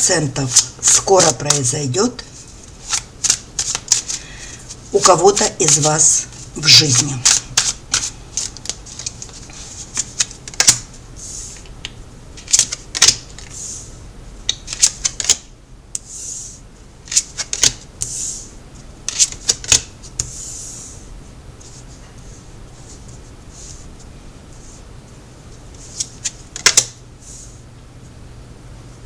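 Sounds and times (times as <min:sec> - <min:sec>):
cards sliding swishes: 0:02.5 - 0:11.7, 0:25.8 - 0:26.8
cards snapping and tapping: 0:02.8 - 0:04.2, 0:07.0 - 0:10.9, 0:11.8 - 0:13.5, 0:14.5 - 0:16.1, 0:17.1 - 0:17.8, 0:19.1 - 0:19.9, 0:26.0 - 0:27.0.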